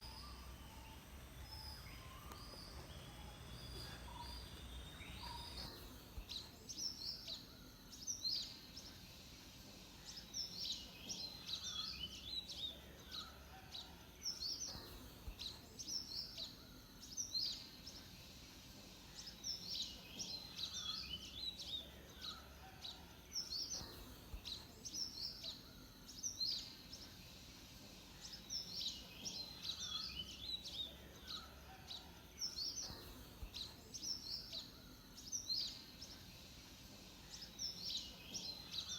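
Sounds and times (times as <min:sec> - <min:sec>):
bird chirping: 0:00.0 - 0:38.9
faint background hiss: 0:00.0 - 0:38.9.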